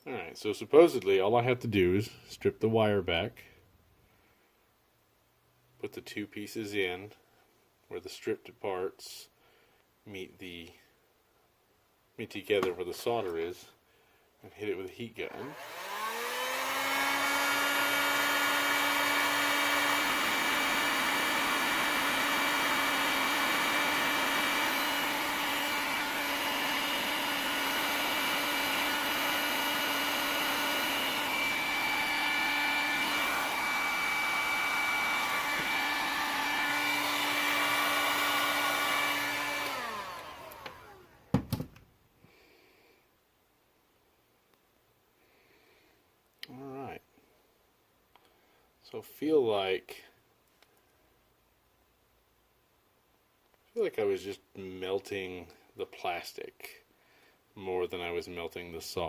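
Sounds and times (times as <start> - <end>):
heat gun blowing: 15.3 - 41.6.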